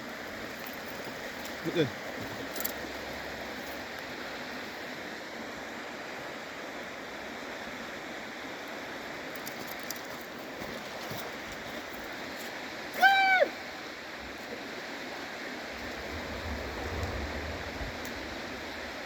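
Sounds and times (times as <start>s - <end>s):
flowing water rushing: 10.3s - 19.0s.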